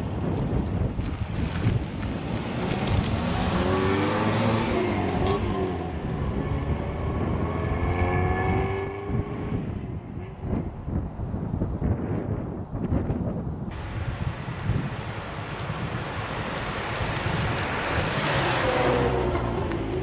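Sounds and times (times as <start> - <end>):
wind noise on microphone: 0.0 - 20.0
car engine accelerating: 2.4 - 9.7, 15.0 - 20.0.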